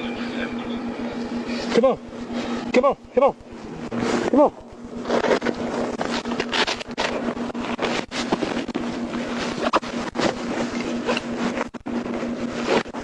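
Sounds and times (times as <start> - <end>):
steady low hum: 0.0 - 13.0
rustling: 3.5 - 13.0.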